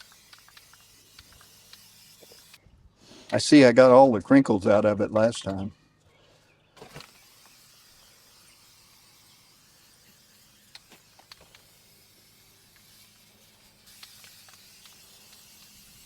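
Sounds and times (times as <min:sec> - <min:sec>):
aerosol can hissing: 0:00.0 - 0:02.6, 0:06.8 - 0:16.0.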